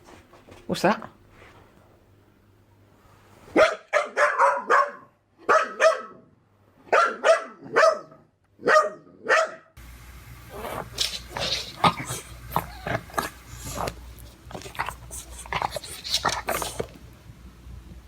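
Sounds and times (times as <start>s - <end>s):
dog barking: 3.5s - 9.8s, 10.5s - 13.9s.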